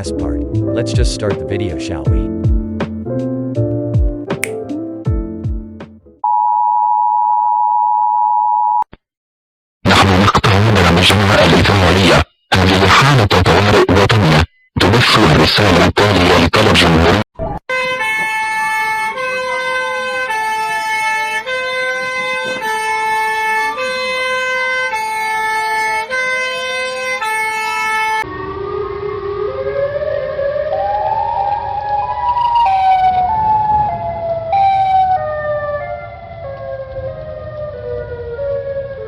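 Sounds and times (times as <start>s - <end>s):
siren tone gliding: 17.8s - 39.0s
wailing tone sliding: 27.8s - 37.8s
alternating alarm tone chords: 28.2s - 37.4s.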